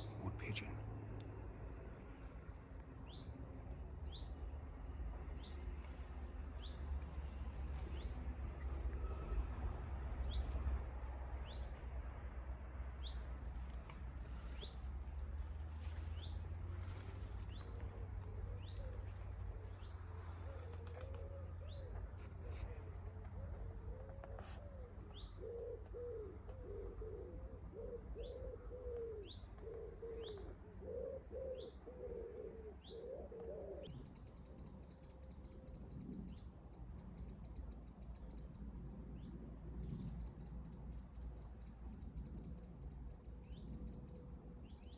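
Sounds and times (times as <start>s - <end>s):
wood pigeon cooing: 13.0s - 34.2s.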